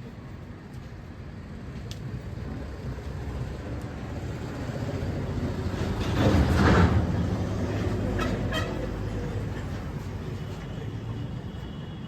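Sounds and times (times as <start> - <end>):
vehicle engine rumble passing: 2.4 - 11.0.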